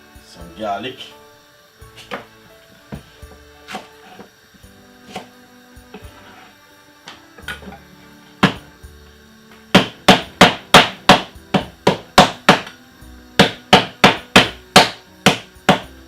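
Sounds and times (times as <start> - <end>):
knife chopping on cutting board: 3.7 - 4.3, 5.1 - 5.3, 8.4 - 8.7, 9.8 - 12.8, 13.4 - 16.0.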